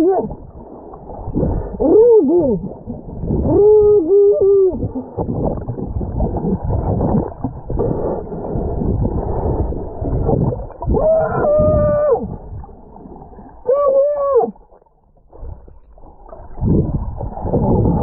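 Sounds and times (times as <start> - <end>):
uneven rumbling noise: 0.0 - 14.2
person calling out: 13.6 - 14.6.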